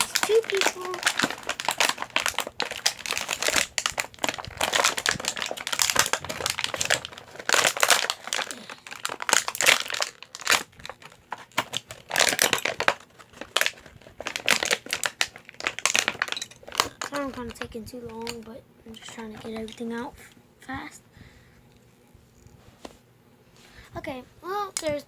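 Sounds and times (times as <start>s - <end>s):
plastic packaging crinkling: 0.0s - 20.0s.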